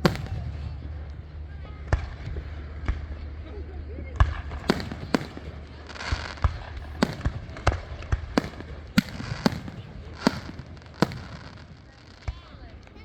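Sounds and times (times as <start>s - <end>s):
fireworks bangs and pops: 0.0s - 1.2s, 4.2s - 13.0s
low rumble: 0.0s - 13.0s.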